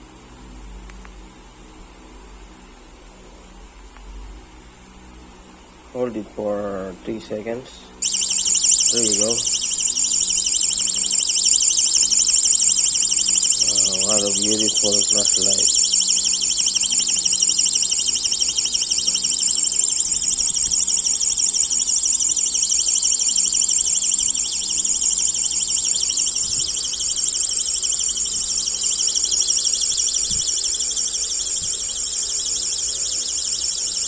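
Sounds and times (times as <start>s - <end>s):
warbling electronic siren: 8.0s - 34.0s.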